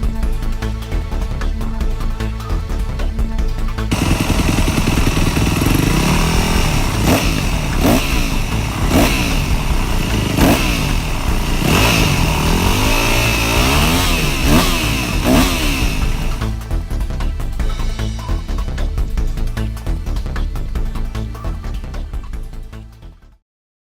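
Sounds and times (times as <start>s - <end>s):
motorcycle engine revving: 3.8s - 17.0s.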